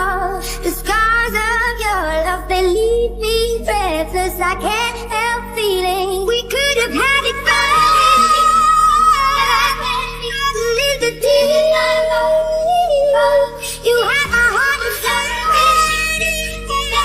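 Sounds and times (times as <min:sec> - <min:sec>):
person singing pop song: 0:00.0 - 0:17.0
backing music: 0:04.4 - 0:17.0.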